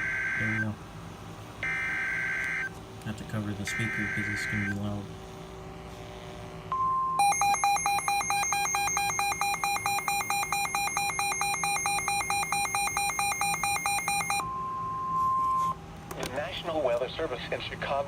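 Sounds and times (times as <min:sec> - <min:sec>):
rapidly pulsing alarm beeps: 0:00.0 - 0:00.7, 0:01.6 - 0:02.7, 0:03.6 - 0:04.8, 0:06.7 - 0:15.8
steady warning tone: 0:00.0 - 0:00.9, 0:01.6 - 0:05.4, 0:06.7 - 0:15.8.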